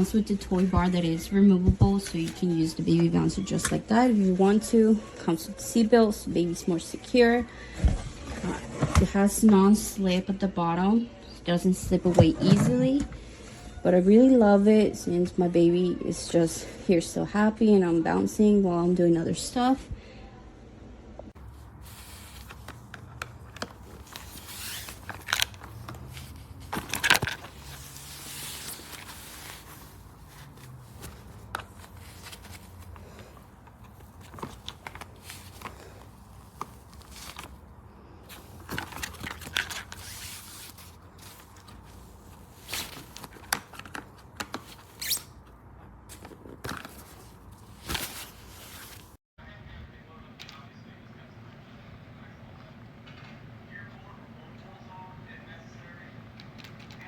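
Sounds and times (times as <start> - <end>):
objects and fabric handled: 0.0 - 5.3, 21.3 - 49.2.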